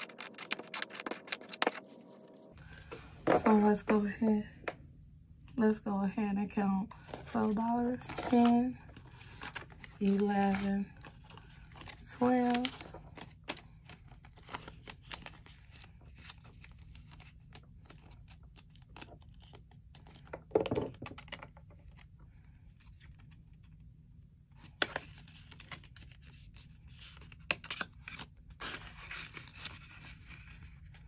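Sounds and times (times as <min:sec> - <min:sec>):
paper money rustling: 0:00.0 - 0:02.5.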